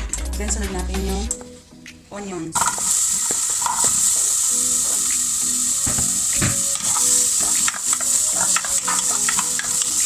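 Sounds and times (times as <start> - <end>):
onions sizzling in oil: 2.6 - 10.0
utensil scraping a pan: 6.5 - 9.8.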